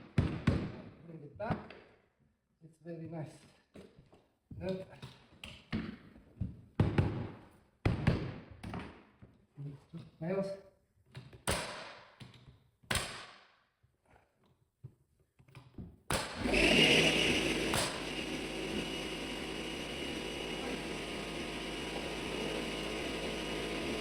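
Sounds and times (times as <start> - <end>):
motorised machine whining: 16.4 - 24.0.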